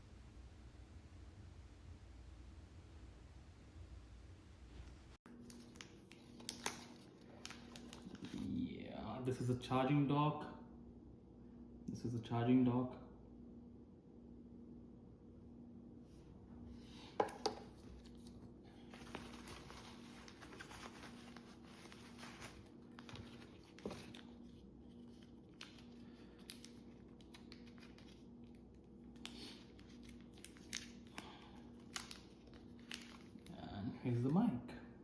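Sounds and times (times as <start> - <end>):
faint steady low hum: 0.0 - 35.0
packaging rustling and crinkling: 5.3 - 8.6, 17.2 - 33.6.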